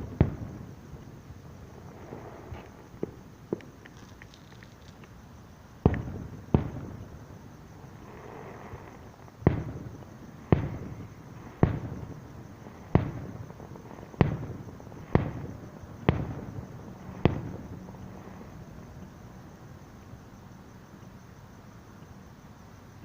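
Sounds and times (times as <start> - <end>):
distant firework booms: 0.0 - 1.1, 5.8 - 7.3, 7.9 - 18.6.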